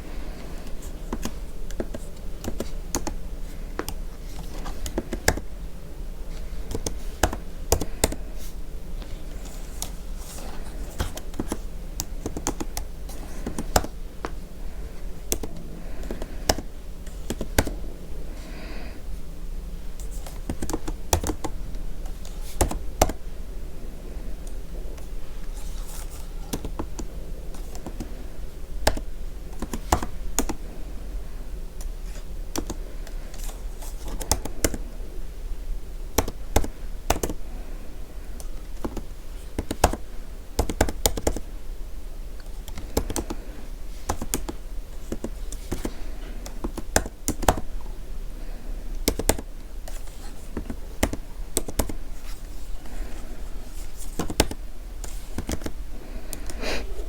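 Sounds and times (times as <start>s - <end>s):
steady low hum: 0.0s - 57.0s
computer keyboard typing: 0.4s - 5.5s, 6.6s - 8.2s, 9.2s - 14.4s, 15.3s - 17.8s, 20.0s - 23.2s, 25.6s - 28.2s, 28.8s - 30.6s, 31.8s - 34.8s, 36.2s - 37.4s, 38.4s - 41.5s, 42.4s - 47.7s, 49.0s - 52.0s, 54.0s - 56.6s.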